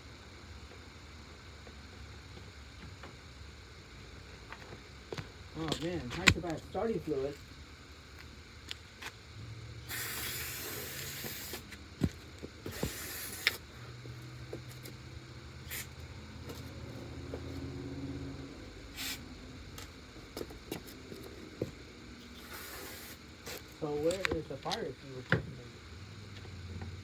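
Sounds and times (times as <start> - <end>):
aerosol spray hissing: 9.8 - 14.0, 15.6 - 16.0, 18.9 - 19.3, 22.2 - 24.3.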